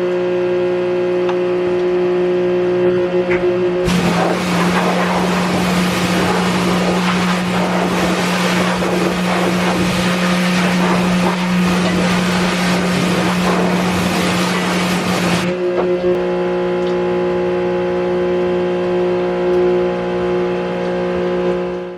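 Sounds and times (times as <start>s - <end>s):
pressure washer motor humming: 3.8s - 16.9s
hissing water spray: 3.9s - 15.5s.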